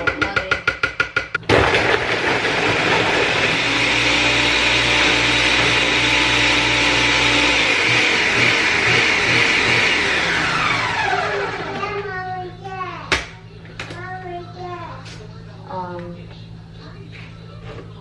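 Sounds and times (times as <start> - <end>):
blender blending frozen fruit: 1.5 - 12.0.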